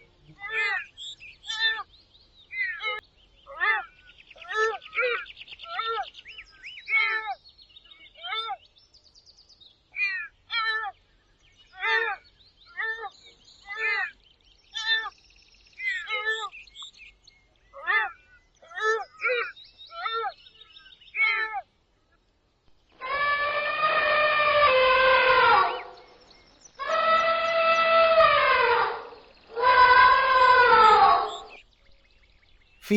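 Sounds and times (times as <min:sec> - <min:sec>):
gazelle bleating calls: 0:26.8 - 0:31.5.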